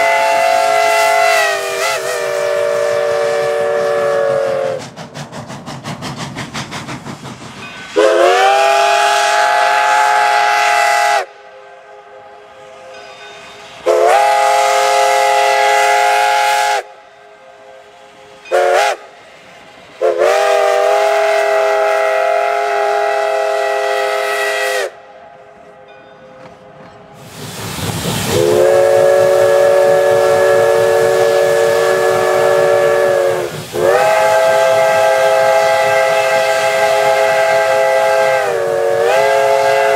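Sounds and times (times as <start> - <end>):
steam whistle chord blasts: 0.0 - 5.1, 7.7 - 26.6, 27.2 - 39.9
steam hiss: 0.0 - 25.8, 26.4 - 39.9
locomotive exhaust chuffing: 1.4 - 9.8.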